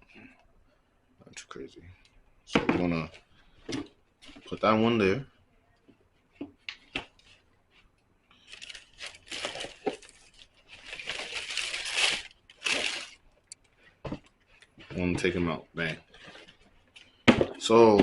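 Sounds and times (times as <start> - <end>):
paper crinkling and rustling: 8.4 - 13.2.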